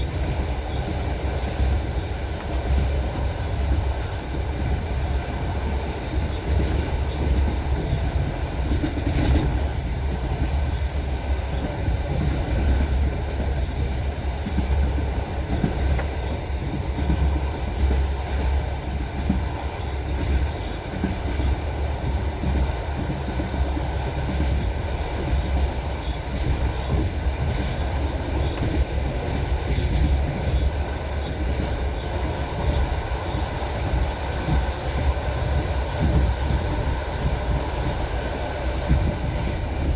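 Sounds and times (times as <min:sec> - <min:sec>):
low train rumble: 0:00.0 - 0:39.9.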